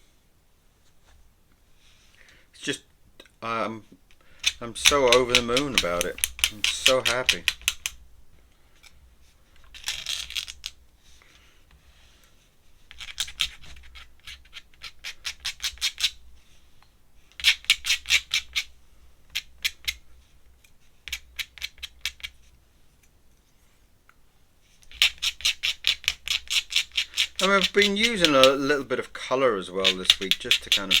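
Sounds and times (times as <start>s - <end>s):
pen scratching across paper: 4.9s - 7.2s, 27.4s - 28.9s.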